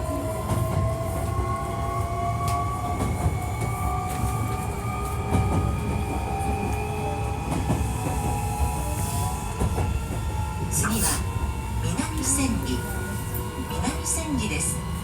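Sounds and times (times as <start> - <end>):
low rumble of wheels on rails: 0.0 - 15.0.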